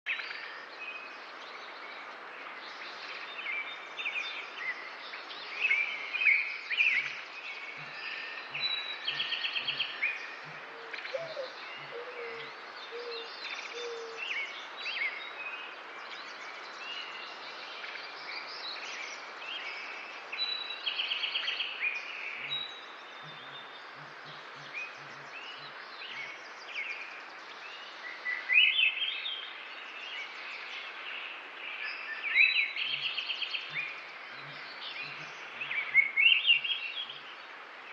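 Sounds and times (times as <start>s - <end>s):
steady outdoor hiss: 0.1s - 37.9s
wild birds chirping: 0.1s - 37.9s.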